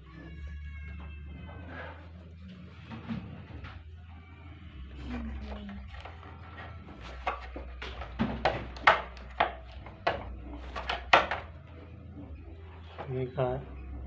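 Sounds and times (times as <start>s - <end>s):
plastic and metal parts knocking: 5.6s - 11.7s.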